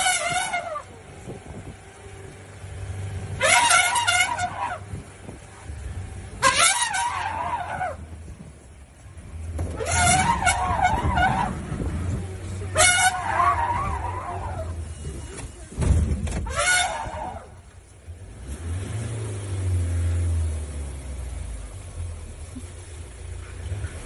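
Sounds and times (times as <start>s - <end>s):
elephant trumpeting: 0.0s - 0.9s, 3.4s - 4.9s, 6.4s - 8.1s, 9.8s - 11.7s, 12.7s - 14.8s, 16.4s - 17.6s
vehicle engine rumbling: 0.0s - 24.0s.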